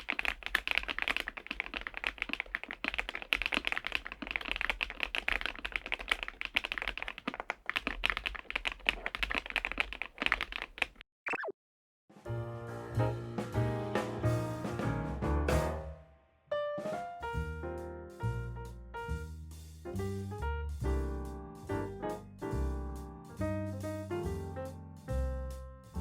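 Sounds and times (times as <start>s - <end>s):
mechanical keyboard typing: 0.0s - 11.0s.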